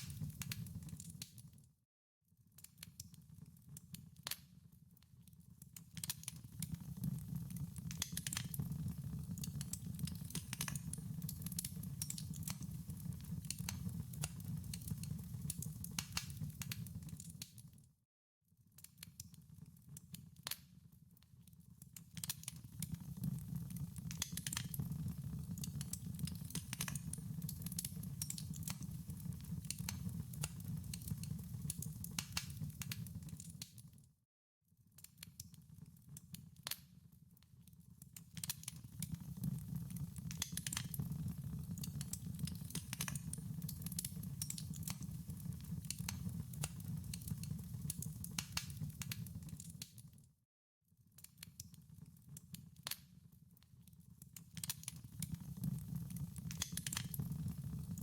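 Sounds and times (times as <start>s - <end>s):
wood fire crackling: 6.0s - 17.3s, 22.2s - 33.5s, 38.4s - 49.7s, 54.6s - 58.0s.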